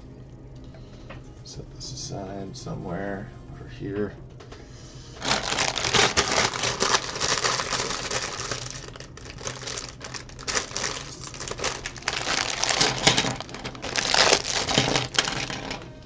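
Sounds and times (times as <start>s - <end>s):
plastic bag crinkling: 5.2s - 16.0s
plastic pieces clicking and rattling: 5.2s - 16.0s.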